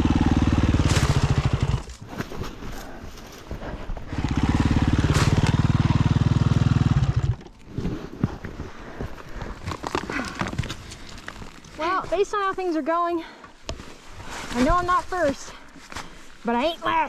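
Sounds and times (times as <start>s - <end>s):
dirt bike engine revving: 0.0s - 2.0s, 4.1s - 7.5s.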